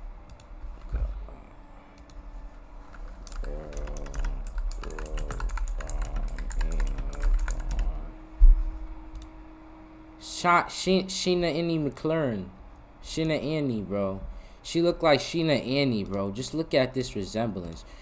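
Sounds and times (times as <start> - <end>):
typing on keyboard: 2.9 - 8.1
faint voices: 3.3 - 8.2.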